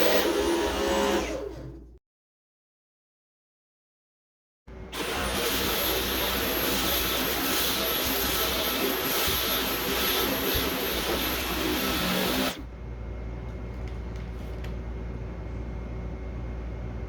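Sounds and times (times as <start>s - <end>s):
cordless vacuum running: 5.0s - 12.6s.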